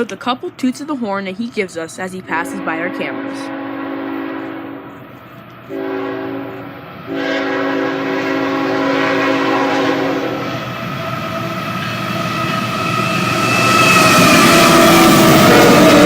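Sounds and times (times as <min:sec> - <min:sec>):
train wheels on rails: 0:00.0 - 0:16.0
locomotive air horn: 0:02.4 - 0:05.1, 0:05.7 - 0:10.5, 0:13.8 - 0:16.0.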